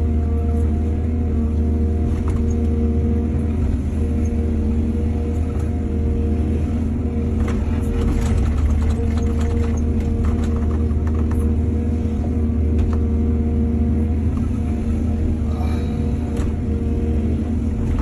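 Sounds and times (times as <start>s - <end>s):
excavator diesel engine running: 0.0s - 18.0s
sharp clicks and knocks: 7.4s - 11.5s.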